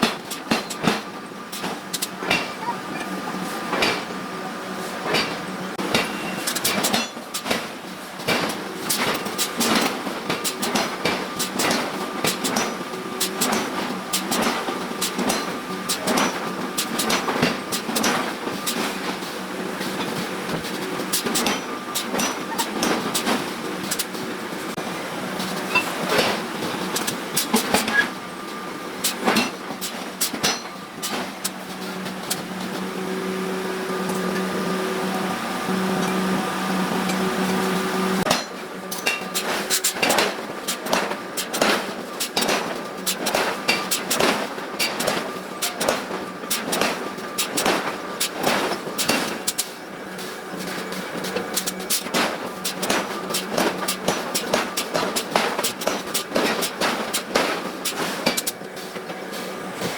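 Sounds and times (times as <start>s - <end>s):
steady background hum: 0.0s - 59.9s
hammer striking iron: 5.1s - 7.7s, 21.4s - 23.0s, 30.2s - 30.7s, 38.3s - 49.5s.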